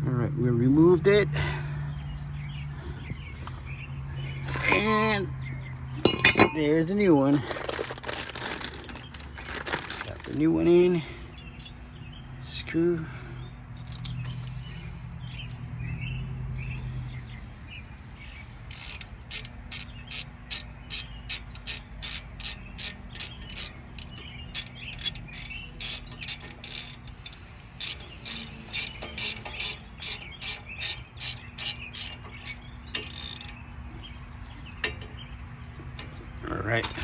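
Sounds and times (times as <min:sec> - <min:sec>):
hand ratchet clicking: 0:13.8 - 0:15.6, 0:18.7 - 0:33.8, 0:34.4 - 0:35.1, 0:36.0 - 0:36.2.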